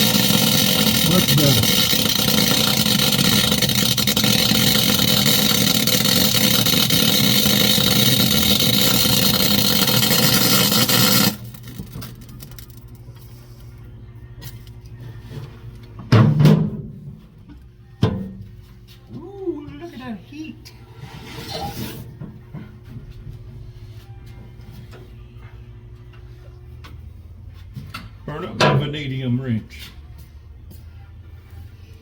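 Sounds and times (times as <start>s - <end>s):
welder running: 0.0s - 13.8s.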